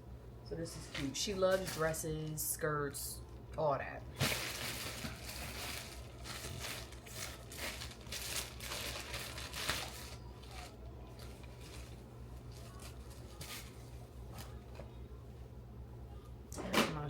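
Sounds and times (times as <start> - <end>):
plastic packaging crinkling: 4.1 - 14.6.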